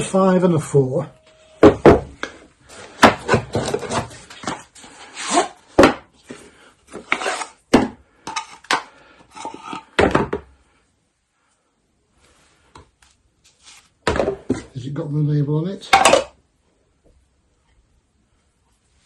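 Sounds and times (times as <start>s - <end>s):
packaging rustling and scraping: 2.6s - 7.6s.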